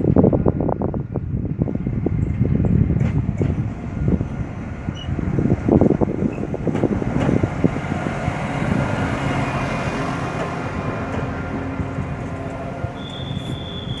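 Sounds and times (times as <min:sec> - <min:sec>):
diesel train rumbling: 0:00.0 - 0:14.0
faint squeal-like tones: 0:13.0 - 0:14.0.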